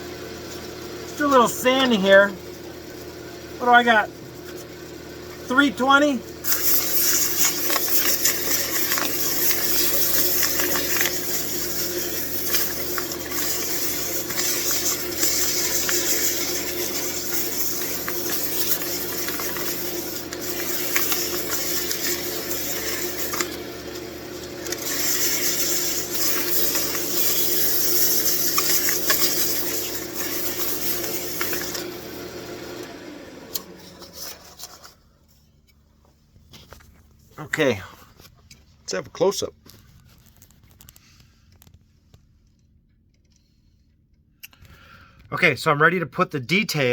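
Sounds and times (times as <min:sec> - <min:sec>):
lathe motor hum: 0:00.0 - 0:34.9
sandpaper sanding hiss: 0:06.4 - 0:23.6, 0:24.6 - 0:32.0.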